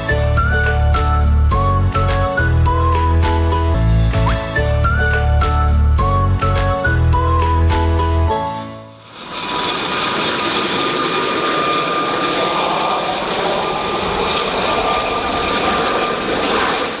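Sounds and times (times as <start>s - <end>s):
helicopter turbine whine: 0.0s - 3.7s, 9.0s - 17.0s
rotor and engine noise: 9.0s - 16.0s.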